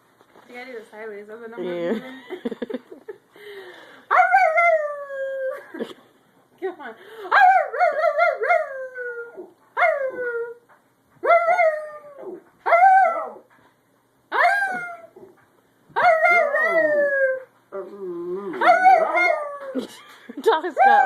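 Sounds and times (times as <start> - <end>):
dog howling: 14.3 - 15.3, 16.0 - 19.8.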